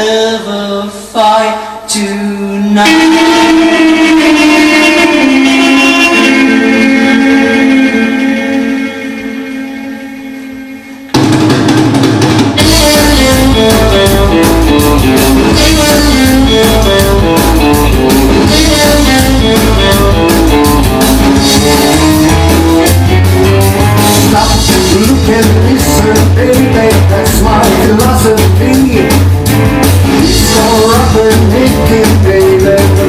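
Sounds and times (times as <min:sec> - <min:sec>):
rock and roll music: 0:02.7 - 0:33.0.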